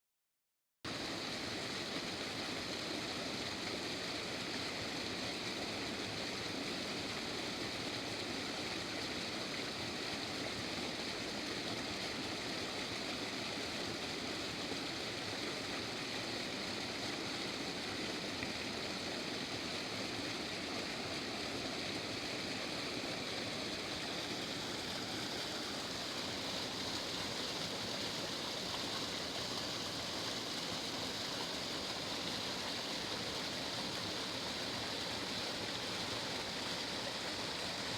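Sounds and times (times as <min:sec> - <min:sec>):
waterfall roaring: 0:16.8 - 0:37.9.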